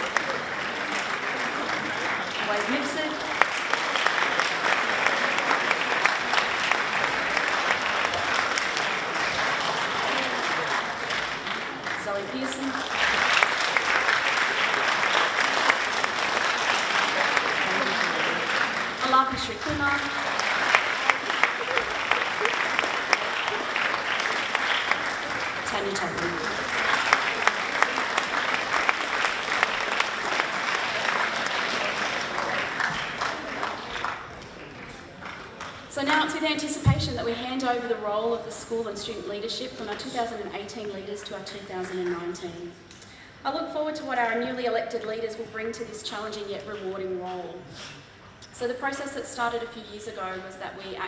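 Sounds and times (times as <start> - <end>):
audience applauding: 0.0 - 35.9
loud individual claps: 0.0 - 35.9.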